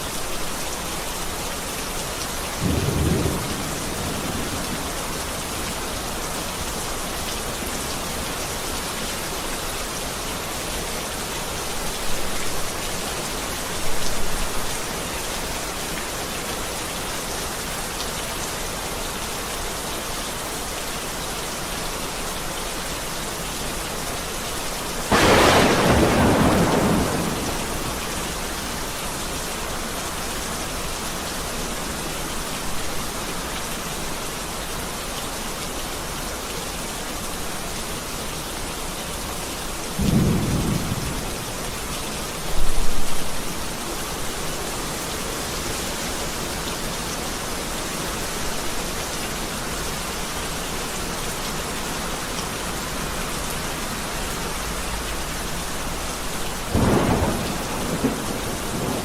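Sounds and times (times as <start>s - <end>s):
heavy rain falling: 0.0s - 59.0s
thunder clap rumbling: 2.6s - 5.4s, 25.1s - 28.8s, 40.0s - 41.8s, 56.7s - 59.0s.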